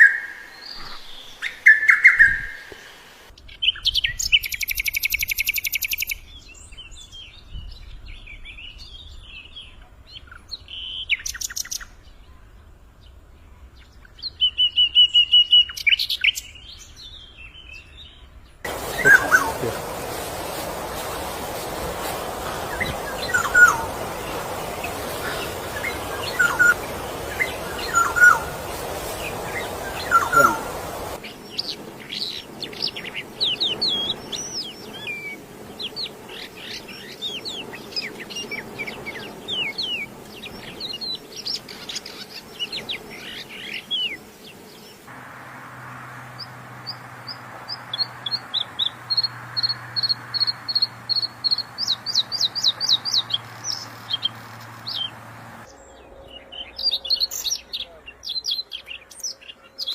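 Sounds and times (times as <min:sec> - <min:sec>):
background hiss: 0:00.0 - 0:03.4, 0:18.7 - 0:55.7
bird chirps and trills: 0:13.8 - 0:45.1, 0:46.4 - 0:59.9
bird short call: 0:18.7 - 0:31.2.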